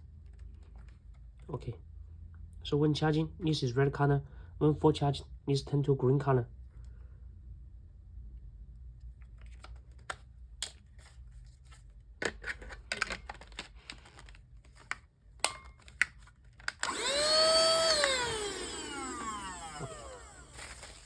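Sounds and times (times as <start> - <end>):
handheld vacuum being handled: 9.2 - 21.0
vacuum motor whine: 16.8 - 21.0.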